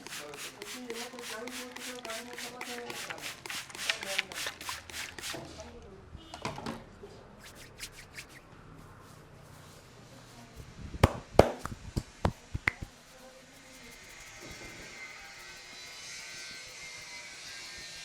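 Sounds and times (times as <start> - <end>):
hands rubbing through hair: 0.0 - 5.5, 7.4 - 8.5, 11.0 - 18.0
sharp slaps and cracks: 11.0 - 12.9.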